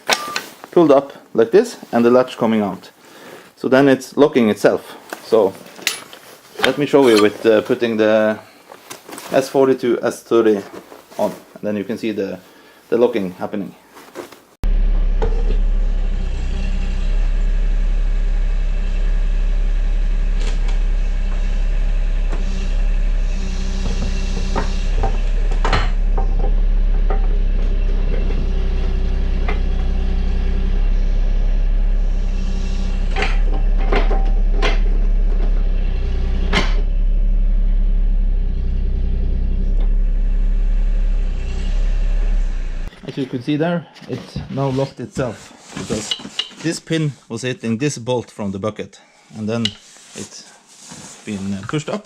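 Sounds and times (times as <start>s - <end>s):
diesel engine running: 14.6s - 42.9s.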